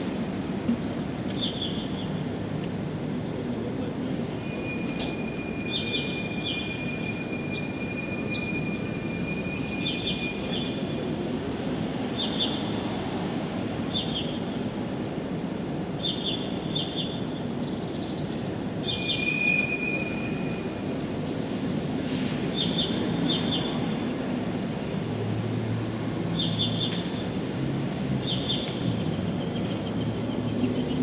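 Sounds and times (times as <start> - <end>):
small birds chirping: 0.9 - 3.2.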